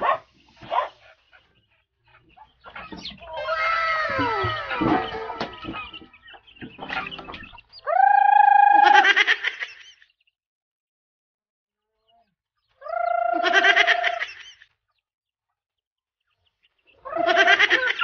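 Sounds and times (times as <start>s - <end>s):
chicken calling: 2.3s - 9.8s, 17.0s - 18.0s.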